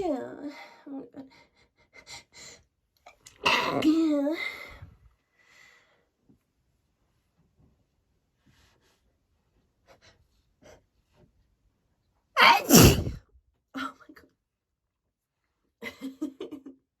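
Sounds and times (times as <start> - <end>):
short voiced sounds: 12.4 - 13.2
woman sneezing: 12.4 - 13.2.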